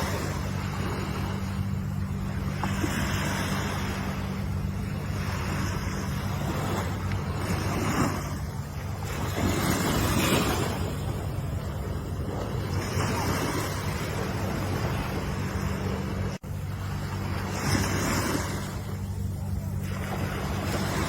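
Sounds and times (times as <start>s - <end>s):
ocean waves breaking: 0.0s - 21.0s
steady low hum: 0.0s - 21.0s.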